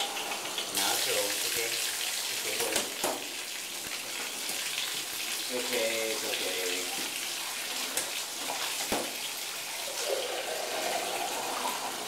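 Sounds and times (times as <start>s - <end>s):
tap water splashing into bathtub: 2.4s - 4.9s, 5.6s - 9.4s.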